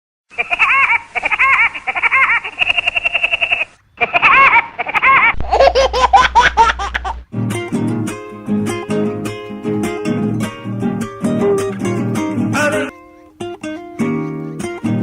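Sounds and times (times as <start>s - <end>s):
cartoon woodpecker laughing: 0.3s - 7.2s
lower-pitched laugh: 0.3s - 7.3s.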